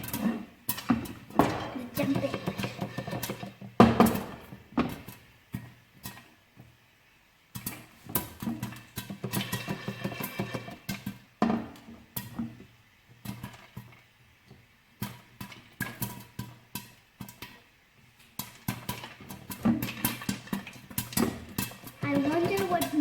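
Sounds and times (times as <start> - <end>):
popcorn popping in a pan: 0.0 - 23.0.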